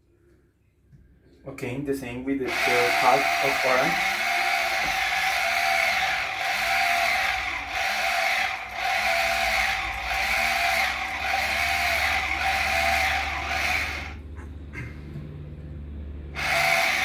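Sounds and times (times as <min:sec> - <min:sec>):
citrus juicer motor whirring: 0:02.4 - 0:14.3, 0:16.3 - 0:17.0.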